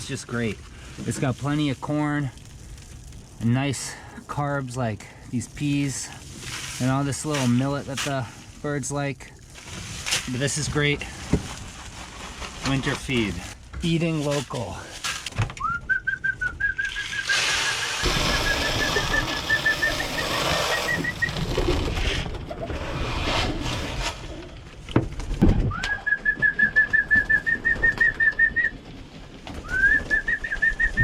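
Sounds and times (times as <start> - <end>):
high whistled notes: 15.6 - 21.4
pigeons: 16.4 - 22.3, 25.7 - 31.0
rushing noise: 17.1 - 21.7.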